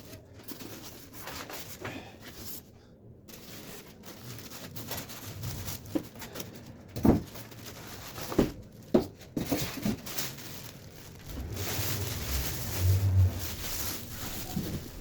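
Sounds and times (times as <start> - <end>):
rustling: 3.3 - 15.0.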